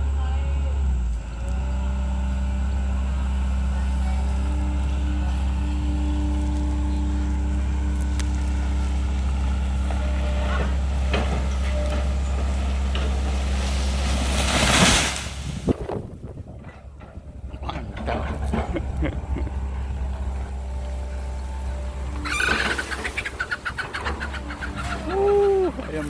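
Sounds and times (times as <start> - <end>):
excavator diesel engine running: 0.0 - 26.0
loud rushing noise: 13.6 - 15.8.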